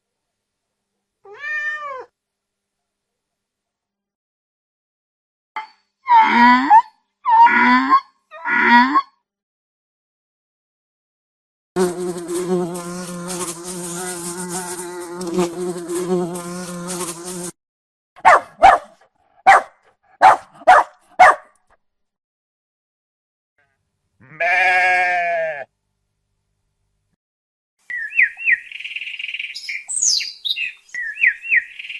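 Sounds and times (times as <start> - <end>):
flying insect buzzing: 11.8 - 17.6
sheep bleating: 24.2 - 25.7.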